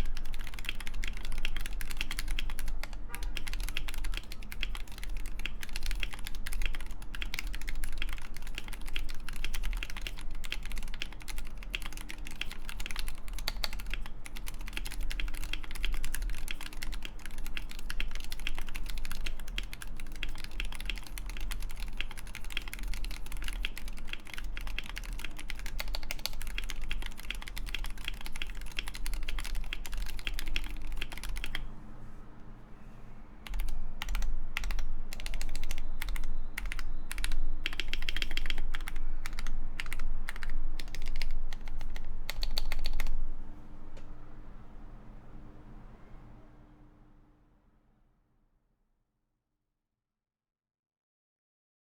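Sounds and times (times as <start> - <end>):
mechanical keyboard keystroke clacks: 0.0 - 31.6, 33.5 - 43.2.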